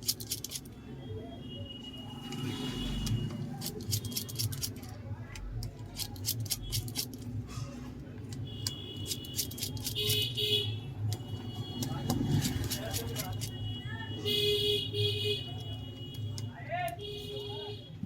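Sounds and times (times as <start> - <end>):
screwdriver and screws clicking: 0.0 - 0.7, 3.0 - 7.4, 9.0 - 10.2.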